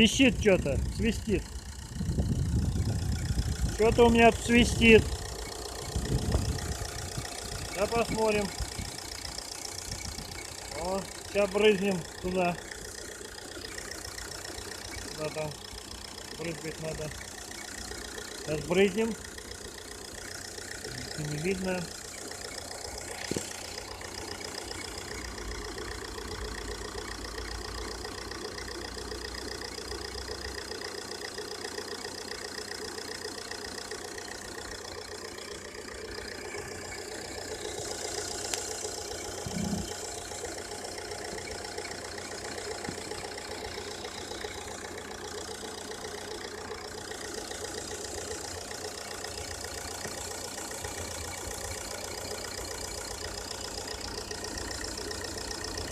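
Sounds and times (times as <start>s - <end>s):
car engine idling: 0.0s - 55.9s.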